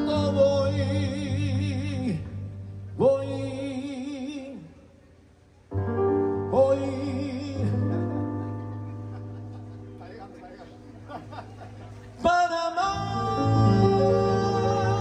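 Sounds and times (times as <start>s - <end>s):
man singing with vibrato: 0.0s - 5.0s, 6.4s - 8.3s, 12.1s - 15.0s
bass: 0.0s - 15.0s
keyboard: 5.1s - 15.0s.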